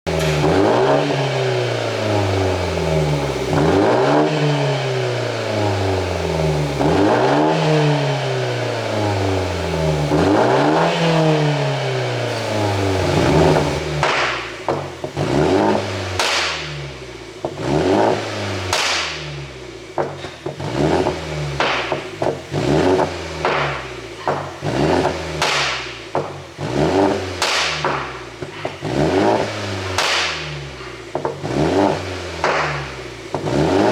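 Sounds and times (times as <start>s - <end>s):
exhaust pops and crackles: 0.0s - 4.4s, 12.1s - 33.9s
car engine revving: 0.0s - 33.9s.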